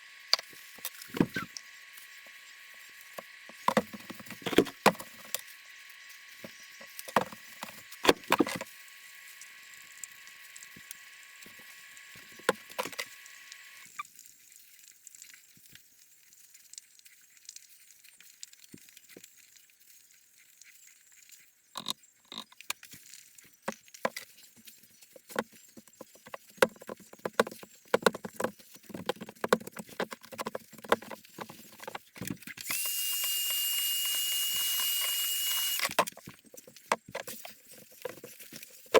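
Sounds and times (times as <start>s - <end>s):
wood and tools handled: 3.2s - 5.5s, 6.4s - 8.7s, 23.6s - 38.9s.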